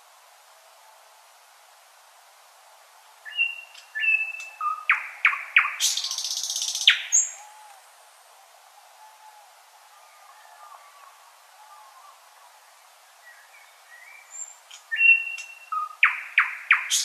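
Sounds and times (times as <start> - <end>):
nightingale singing: 3.2 - 7.9, 10.0 - 17.0.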